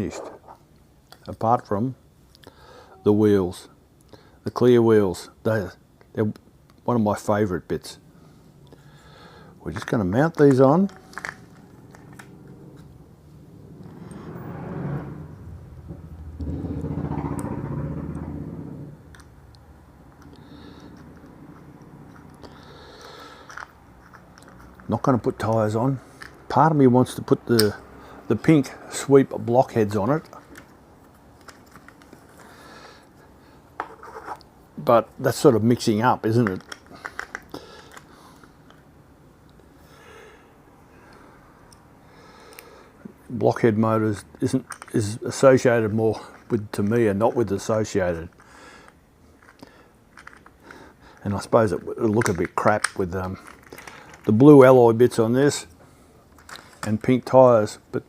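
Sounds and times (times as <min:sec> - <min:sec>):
soft breath: 0:02.4 - 0:03.0, 0:08.1 - 0:09.6, 0:20.3 - 0:21.2, 0:48.4 - 0:50.0
small parts clicking: 0:09.8 - 0:12.9, 0:19.1 - 0:25.0, 0:36.4 - 0:38.9, 0:44.4 - 0:45.0, 0:48.3 - 0:54.4.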